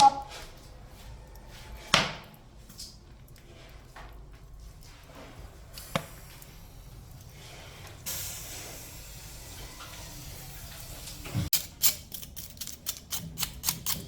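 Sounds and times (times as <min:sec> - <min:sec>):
steady hiss: 0:05.7 - 0:11.4.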